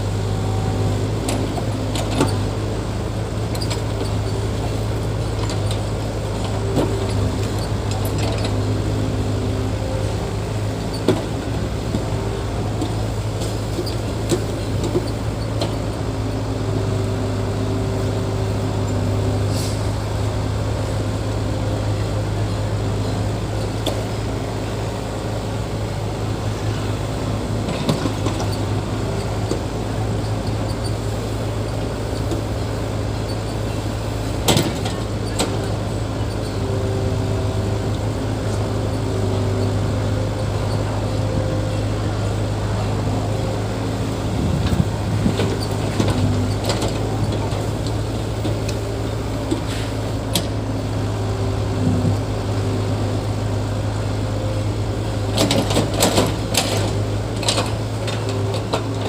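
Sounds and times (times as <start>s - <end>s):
diesel engine running: 0.0s - 59.0s.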